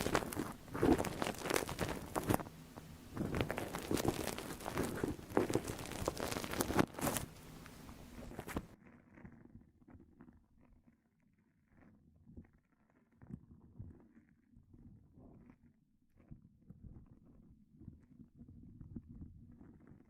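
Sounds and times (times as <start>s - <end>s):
ear cleaning scratching and crackling: 0.0s - 8.8s.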